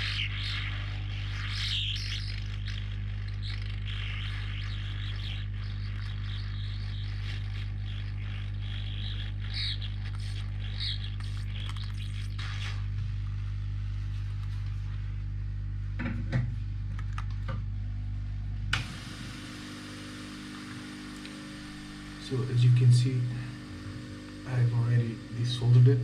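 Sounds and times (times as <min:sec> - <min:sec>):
hot air gun humming: 0:18.7 - 0:26.0.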